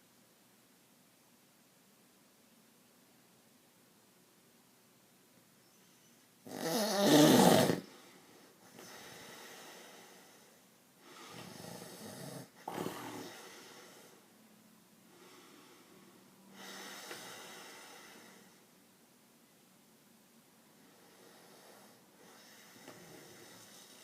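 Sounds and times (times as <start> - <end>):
person snoring: 6.5 - 8.0, 11.2 - 14.2.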